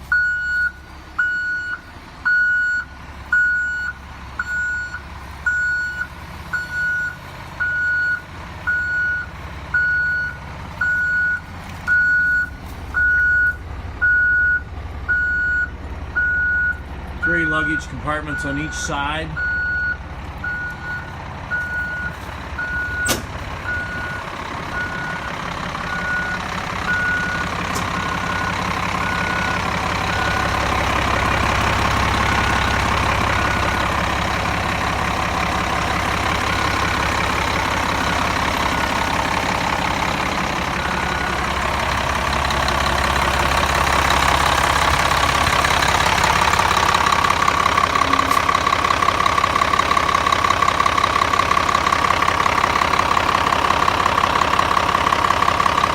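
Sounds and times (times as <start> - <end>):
bus diesel engine running: 0.0 - 55.9
backup alarm beeping: 0.1 - 30.6.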